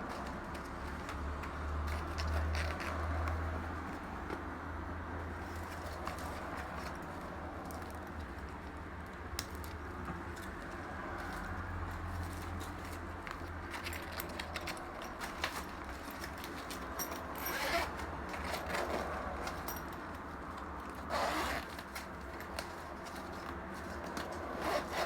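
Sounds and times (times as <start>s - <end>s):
backpack rustling and clicks: 0.1s - 4.5s, 12.2s - 25.0s
fabric scraping: 23.8s - 25.0s.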